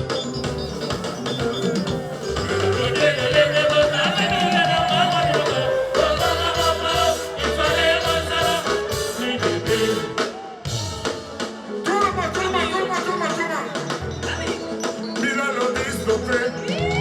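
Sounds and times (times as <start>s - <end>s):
bass line: 0.0s - 8.8s
live band music: 0.0s - 17.0s
person singing: 0.8s - 10.3s.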